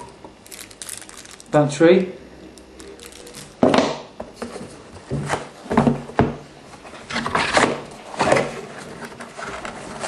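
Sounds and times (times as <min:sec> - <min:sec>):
cardboard packaging rustling: 0:00.0 - 0:01.6, 0:02.8 - 0:03.6.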